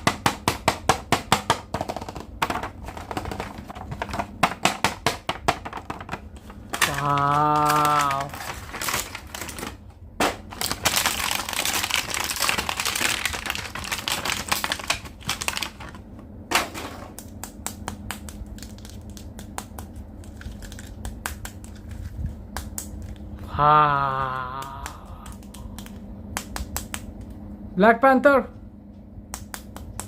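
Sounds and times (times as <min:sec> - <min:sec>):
plastic packaging crackling: 0:05.7 - 0:16.1, 0:18.1 - 0:22.4.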